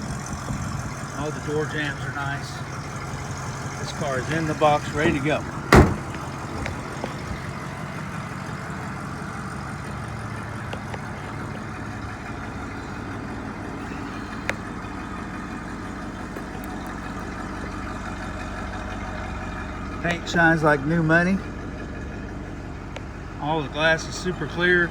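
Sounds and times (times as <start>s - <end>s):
car engine idling: 0.0s - 24.9s.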